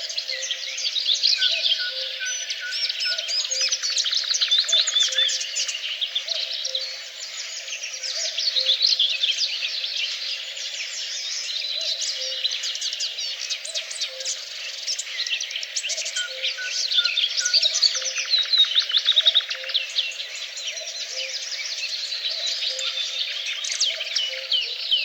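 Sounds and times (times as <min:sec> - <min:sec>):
songbirds chorus: 0:00.0 - 0:25.0.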